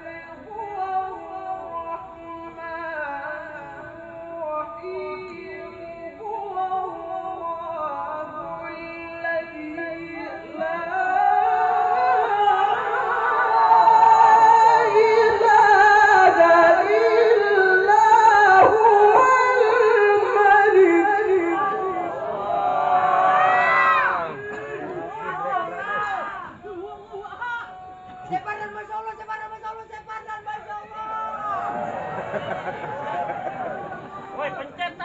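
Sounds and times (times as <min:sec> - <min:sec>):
man chanting recitation: 0:00.0 - 0:23.0.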